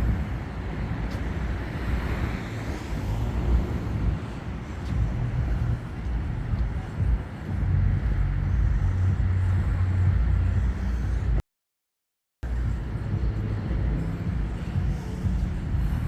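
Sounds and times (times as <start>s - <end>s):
vehicle engine rumbling: 0.0s - 11.4s, 12.4s - 16.0s.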